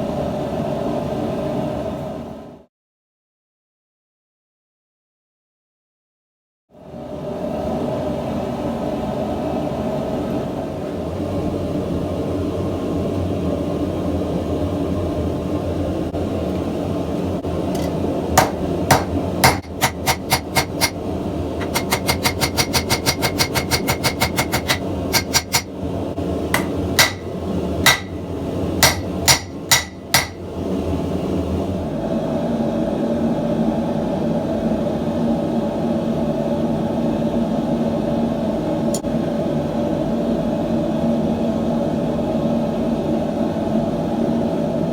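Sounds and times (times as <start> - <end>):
hammer striking metal on anvil: 17.8 - 21.0, 21.6 - 25.7, 26.6 - 30.5.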